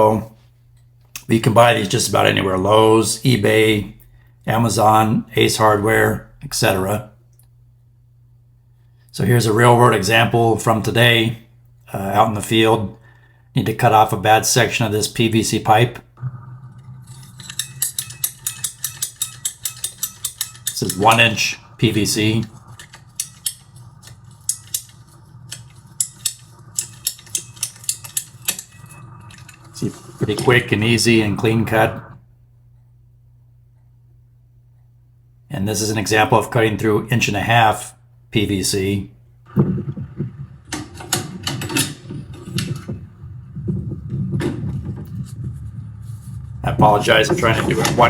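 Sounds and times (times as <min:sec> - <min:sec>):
pipe cutter ratchet clicks: 0:17.1 - 0:21.4, 0:22.5 - 0:29.9
tool knocking and rubbing: 0:17.1 - 0:21.4, 0:22.1 - 0:30.5, 0:39.5 - 0:48.0.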